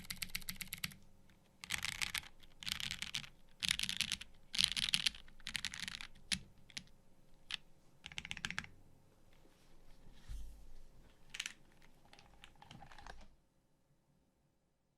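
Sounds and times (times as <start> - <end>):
mechanical keyboard typing: 0.0 - 1.0, 1.6 - 6.9, 7.5 - 8.8, 11.3 - 13.3.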